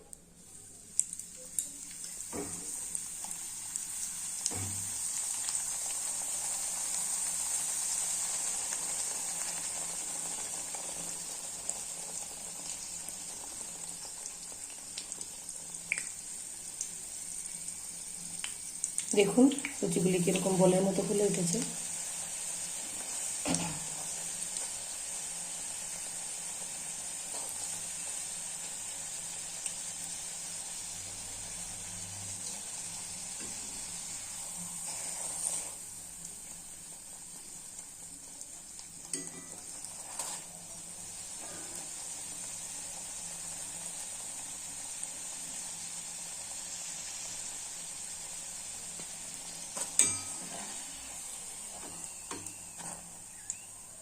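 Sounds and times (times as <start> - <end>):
frying in hot oil sizzle: 0.0 - 54.0.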